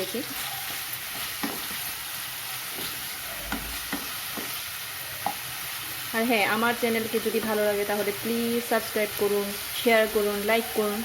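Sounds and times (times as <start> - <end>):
chicken sizzling in hot oil: 0.0 - 11.0.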